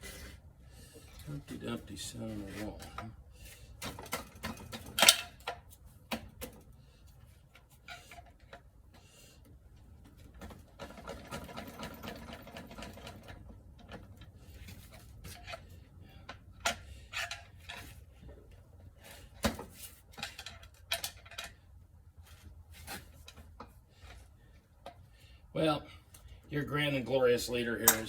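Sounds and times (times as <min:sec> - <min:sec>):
metal parts clicking and clattering: 0:03.9 - 0:05.6, 0:16.6 - 0:18.0, 0:19.8 - 0:21.6, 0:27.8 - 0:28.0.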